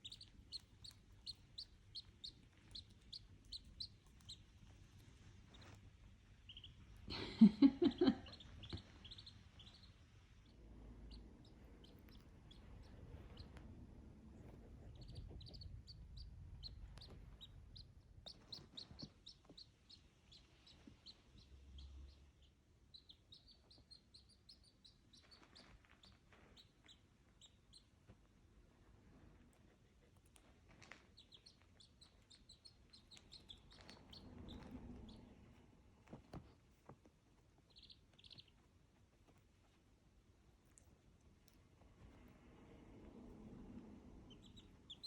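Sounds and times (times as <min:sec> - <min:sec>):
duckling peeping: 0:00.0 - 0:28.0, 0:31.1 - 0:36.4, 0:37.4 - 0:39.4, 0:44.0 - 0:45.0
low rumble: 0:08.6 - 0:19.0, 0:41.9 - 0:45.0.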